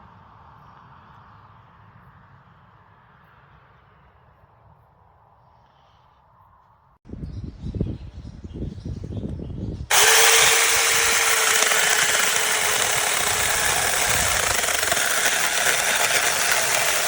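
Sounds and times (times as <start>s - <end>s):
electric chainsaw running: 9.9s - 17.0s.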